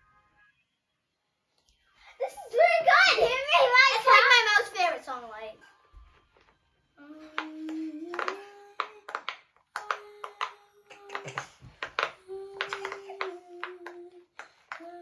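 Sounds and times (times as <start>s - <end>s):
sharp claps: 7.4s - 14.9s.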